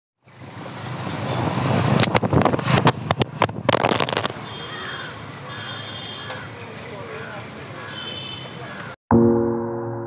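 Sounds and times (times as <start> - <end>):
motor vehicle noise: 0.2 - 9.0
sharp crackles or knocks: 2.0 - 4.4.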